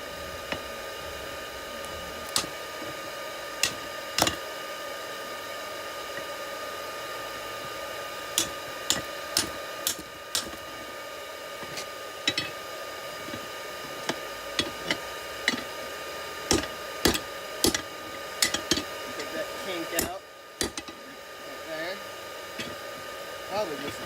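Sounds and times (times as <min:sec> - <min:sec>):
air blower humming: 0:00.0 - 0:24.0
hammer striking metal on anvil: 0:02.3 - 0:02.6, 0:03.6 - 0:04.4, 0:08.4 - 0:10.6, 0:11.7 - 0:12.6, 0:14.0 - 0:15.7, 0:16.5 - 0:19.3, 0:20.0 - 0:21.0.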